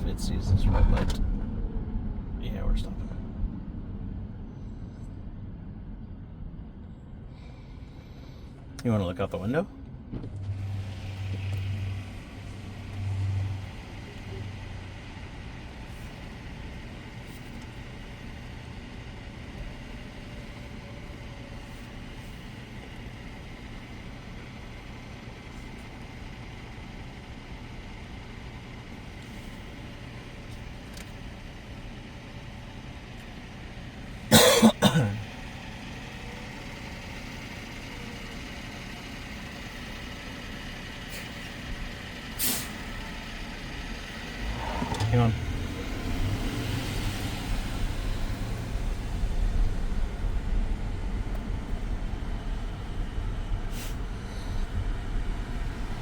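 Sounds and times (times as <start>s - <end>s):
low pulses: 0.0s - 8.1s, 44.0s - 56.0s
road traffic: 0.0s - 56.0s.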